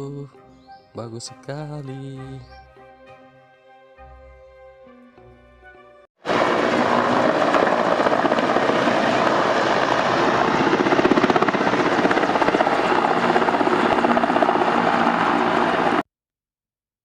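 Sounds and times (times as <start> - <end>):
helicopter engine noise: 6.2 - 16.0
helicopter rotor chop: 6.2 - 16.0.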